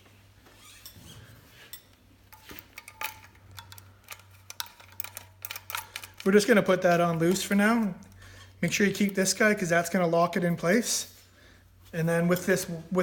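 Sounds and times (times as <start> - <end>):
metal parts clinking: 1.7 - 9.4.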